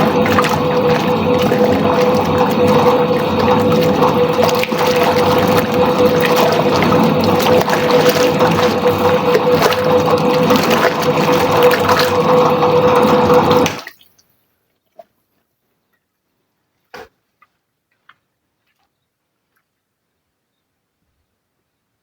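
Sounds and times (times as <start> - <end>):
washing machine churning water: 0.0 - 14.0.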